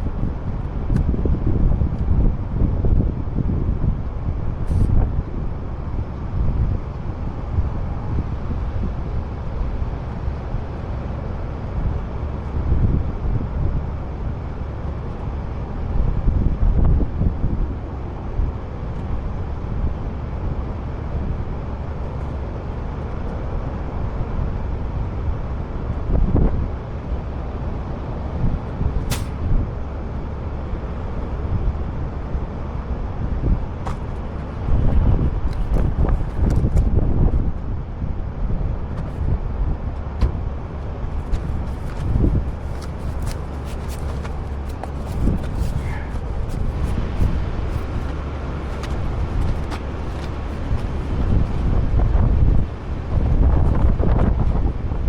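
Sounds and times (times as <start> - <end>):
heavy truck engine rumble: 0.0 - 55.0
sharp click: 29.1 - 29.4.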